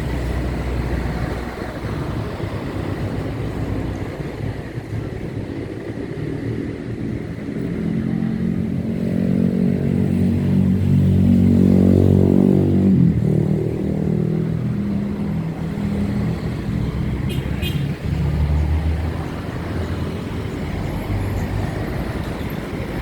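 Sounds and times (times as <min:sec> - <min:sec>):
vehicle engine passing by: 0:07.0 - 0:23.0.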